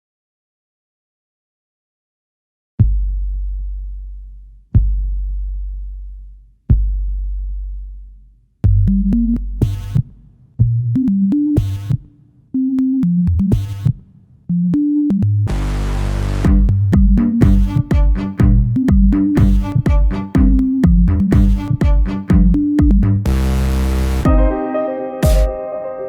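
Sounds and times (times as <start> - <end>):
deep bass boom: 2.8 - 10.9, 15.5 - 24.5
drum machine beats: 4.7 - 5.7, 6.7 - 7.4, 8.6 - 24.6, 25.2 - 25.6
synth bassline: 14.6 - 24.6, 25.2 - 25.6.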